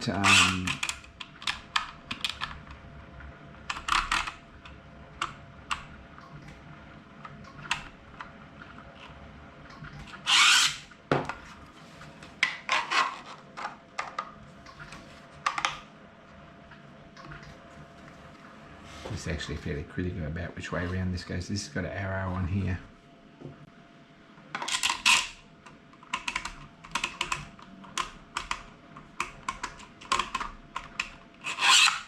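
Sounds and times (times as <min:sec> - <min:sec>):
plastic parts clicking and knocking: 0:00.3 - 0:02.7, 0:26.0 - 0:32.0.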